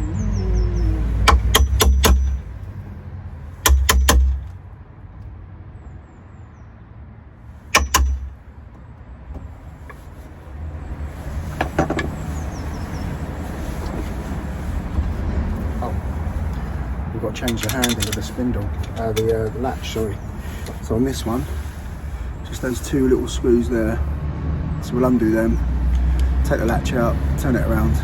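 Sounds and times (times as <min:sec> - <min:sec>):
tools and lock parts clicking: 0:01.2 - 0:02.6, 0:03.7 - 0:04.6, 0:07.8 - 0:08.4, 0:17.3 - 0:19.7.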